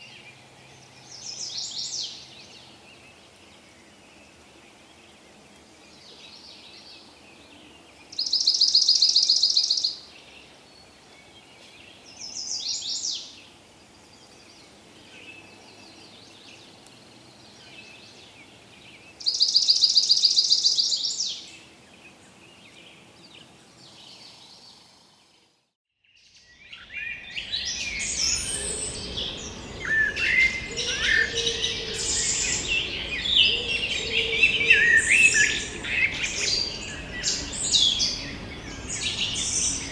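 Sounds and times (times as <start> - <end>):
many birds chirping: 26.4 - 39.9
bird high trill: 27.4 - 39.9.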